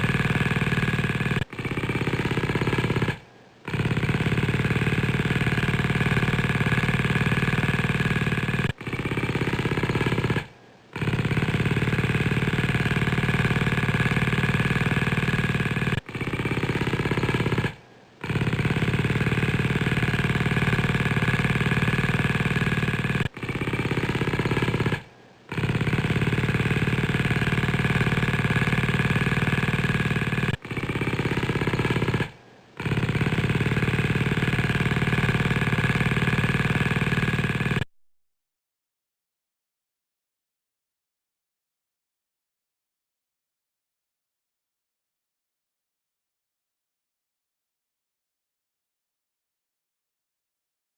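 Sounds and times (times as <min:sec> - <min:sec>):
motorcycle engine running: 0:00.0 - 0:37.9.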